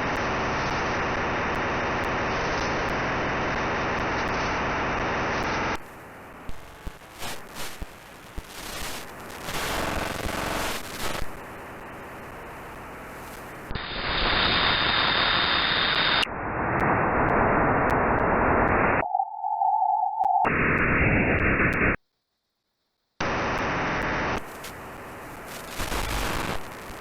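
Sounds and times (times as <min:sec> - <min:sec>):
radio static: 0:06.5 - 0:22.0, 0:23.3 - 0:27.0
steady tone: 0:16.3 - 0:22.0.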